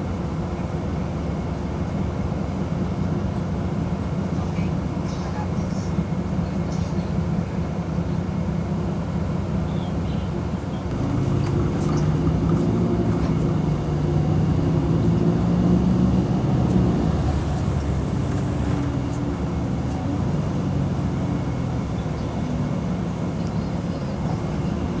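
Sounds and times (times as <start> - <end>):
construction machinery engine running: 5.1 - 25.0.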